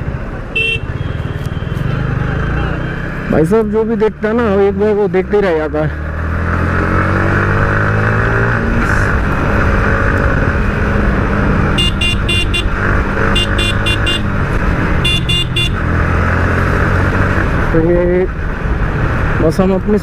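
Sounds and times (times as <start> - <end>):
vehicle horn short beeps: 0.6 - 1.8, 11.8 - 12.7, 13.3 - 14.3, 15.0 - 15.8
motorcycle engine running: 9.2 - 16.0.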